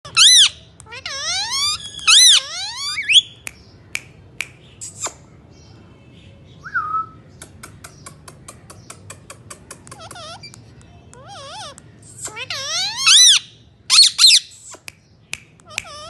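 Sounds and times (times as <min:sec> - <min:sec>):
parrot squawking: 0:00.0 - 0:03.4, 0:09.9 - 0:10.6, 0:11.2 - 0:14.9, 0:15.6 - 0:16.0
parrot chirping: 0:00.0 - 0:03.6, 0:07.8 - 0:14.9, 0:15.6 - 0:16.0
parrot whistling: 0:00.1 - 0:03.4, 0:12.4 - 0:14.8.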